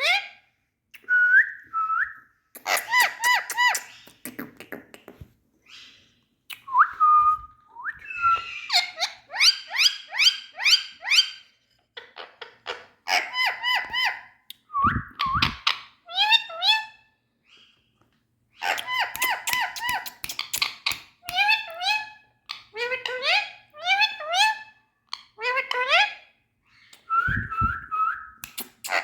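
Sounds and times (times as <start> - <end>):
parakeet whistling and calling: 7.8 - 11.5, 14.8 - 17.8.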